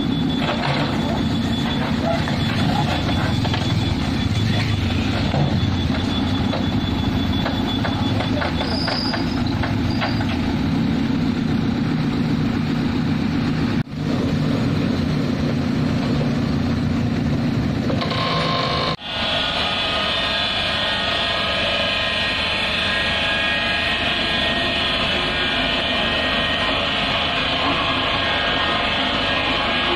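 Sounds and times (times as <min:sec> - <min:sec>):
diesel engine drone: 0:00.0 - 0:29.9
machinery ticks and clatter: 0:00.1 - 0:11.6.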